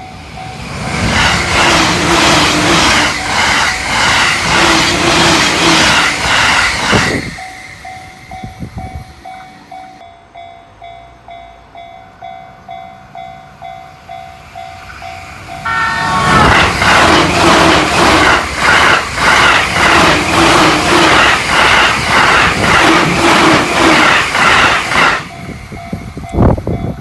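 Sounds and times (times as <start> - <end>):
level-crossing alarm bell: 0.0 - 6.6, 7.3 - 18.5
train wheels clattering: 0.0 - 10.0, 14.6 - 27.0
train rushing past: 0.0 - 27.0
train horn: 15.6 - 18.5.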